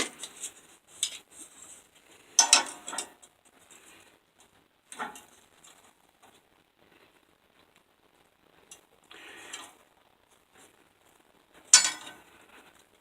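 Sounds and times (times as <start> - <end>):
metallic clinks and scrapes: 0.0 - 3.3, 11.7 - 12.3.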